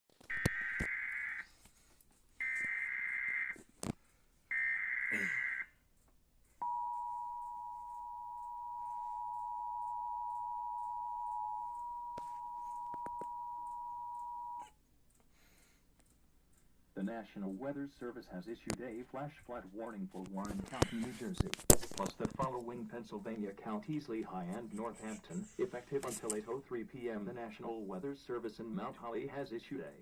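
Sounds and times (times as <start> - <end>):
two-tone attention signal: 6.6 - 14.7.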